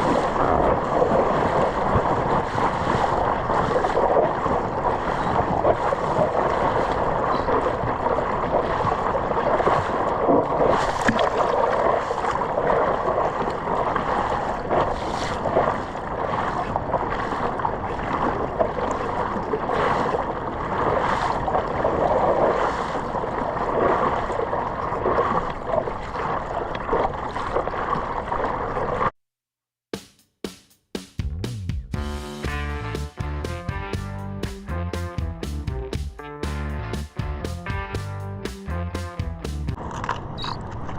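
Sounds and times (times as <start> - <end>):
ocean surf rushing: 0.0 - 24.3
water splashes: 0.0 - 29.2.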